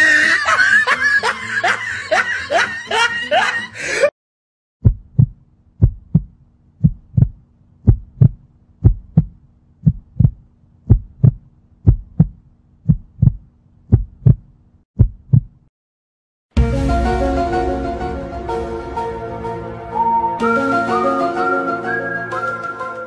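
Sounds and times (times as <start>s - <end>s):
heartbeat thumping: 4.8s - 15.6s.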